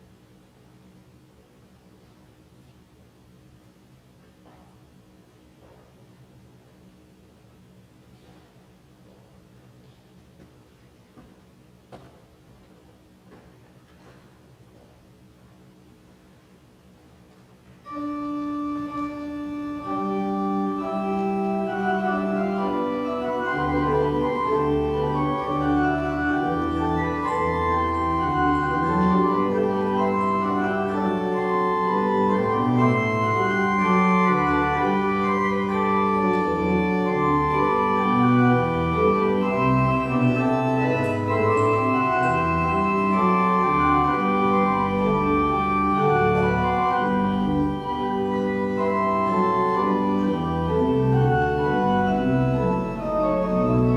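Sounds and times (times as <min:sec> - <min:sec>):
organ playing sustained chords: 0:17.8 - 0:53.9.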